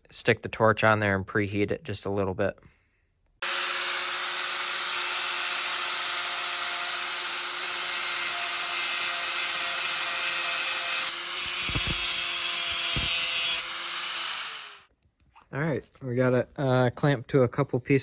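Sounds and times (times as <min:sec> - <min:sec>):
angle grinder grinding metal: 0:03.4 - 0:14.9.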